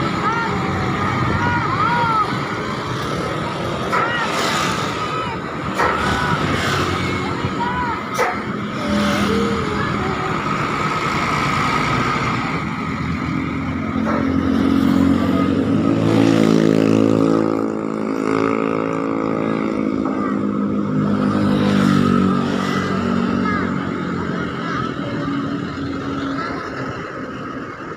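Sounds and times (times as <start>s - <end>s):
engine and traffic noise: 0.0s - 27.9s.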